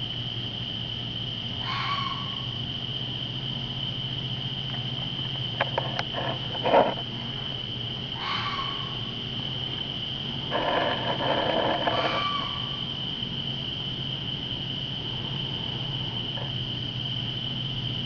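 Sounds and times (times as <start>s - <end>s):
insect chorus drone: 0.0s - 18.0s
low steady hum: 0.0s - 18.0s
raspy animal call: 1.6s - 2.5s, 8.2s - 9.1s, 10.5s - 12.9s
animal calls: 1.6s - 2.6s, 8.2s - 9.2s, 10.5s - 12.9s.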